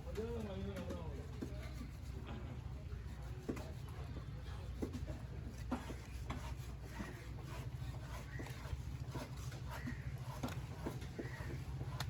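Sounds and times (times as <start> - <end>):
knife scraping on wooden block: 5.6 - 12.0.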